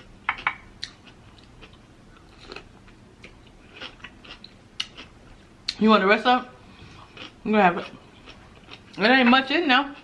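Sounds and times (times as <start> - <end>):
chewing crunchy cucumber: 0.8 - 5.8, 6.9 - 9.1.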